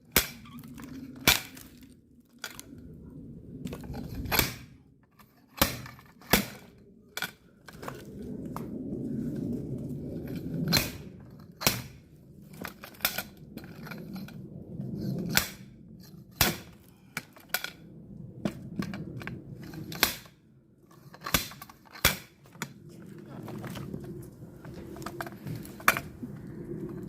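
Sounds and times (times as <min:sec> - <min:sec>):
axe splitting firewood: 0:00.1 - 0:01.9, 0:04.2 - 0:04.8, 0:05.5 - 0:06.7, 0:10.7 - 0:11.0, 0:11.6 - 0:12.0, 0:16.4 - 0:17.4, 0:19.9 - 0:20.3, 0:21.2 - 0:22.7.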